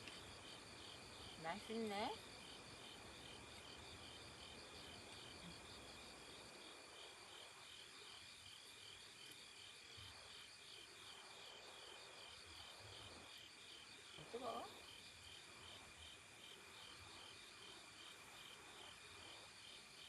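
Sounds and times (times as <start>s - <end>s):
crickets chirping: 0.0s - 20.0s.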